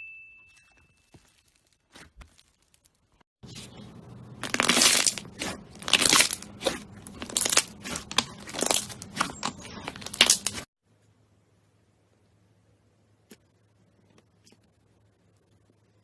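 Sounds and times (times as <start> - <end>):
hands squishing slime: 4.4 - 10.7.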